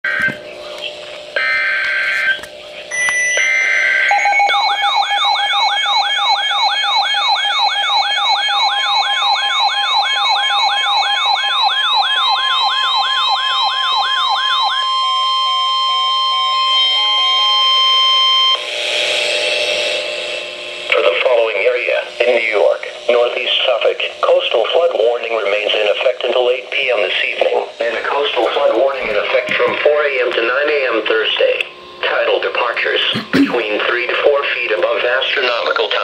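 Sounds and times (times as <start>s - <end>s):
steady electronic alert tones: 2.9s - 17.0s
warbling siren-like tone: 3.6s - 19.9s.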